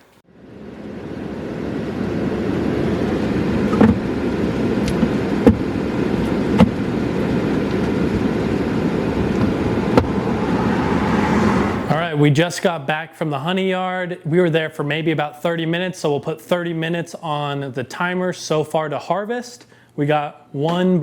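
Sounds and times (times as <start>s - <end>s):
car road and engine noise: 0.0s - 12.0s
sharp knocks: 5.4s - 5.6s.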